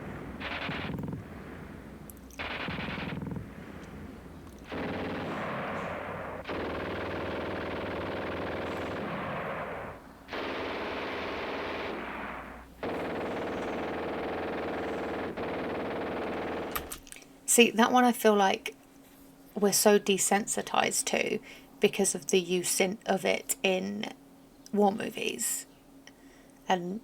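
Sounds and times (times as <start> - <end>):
machine gun firing bursts: 0.0 - 17.0.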